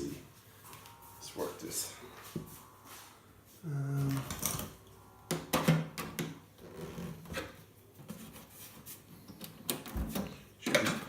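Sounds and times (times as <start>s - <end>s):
low hum: 0.1s - 6.7s.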